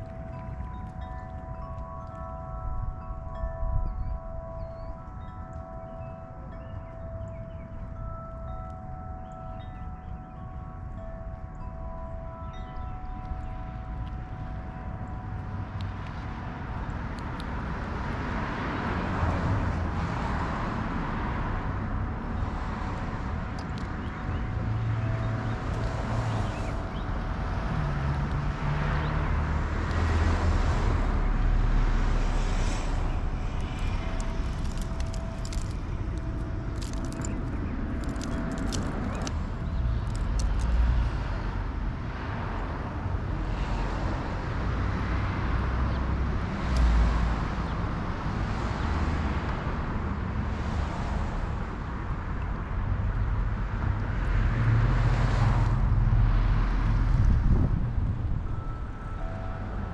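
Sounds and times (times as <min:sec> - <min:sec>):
distant road traffic rumble: 0:00.0 - 0:59.9.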